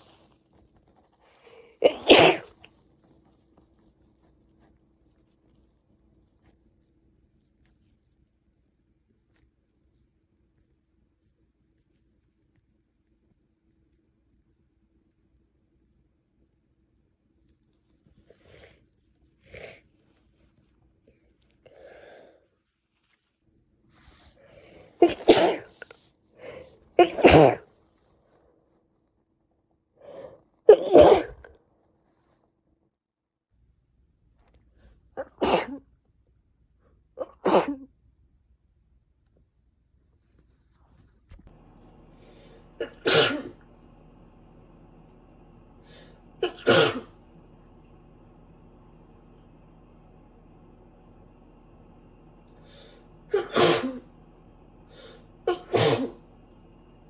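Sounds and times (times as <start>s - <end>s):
woman sneezing: 1.8s - 2.5s, 25.0s - 25.8s, 26.4s - 27.6s, 30.7s - 31.5s, 42.8s - 43.6s, 45.9s - 47.1s, 53.3s - 54.0s, 55.0s - 56.2s.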